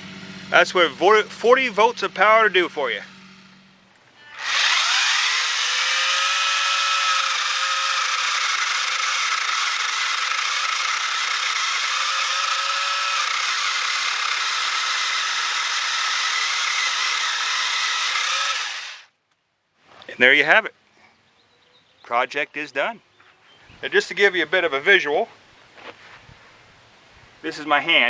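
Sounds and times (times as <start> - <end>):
pole saw whining: 0.7 - 19.1
chain cutting wood: 4.0 - 19.1.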